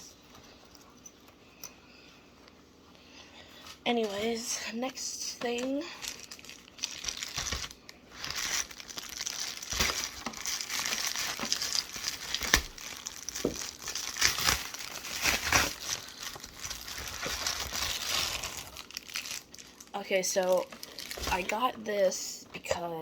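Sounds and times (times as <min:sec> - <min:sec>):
packaging crinkling: 0:05.5 - 0:21.6.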